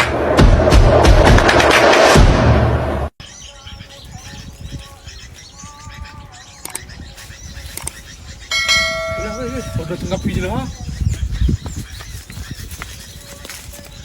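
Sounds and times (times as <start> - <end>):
small birds chirping: 3.2 - 14.0
sharp clicks: 6.6 - 6.9, 7.6 - 8.1.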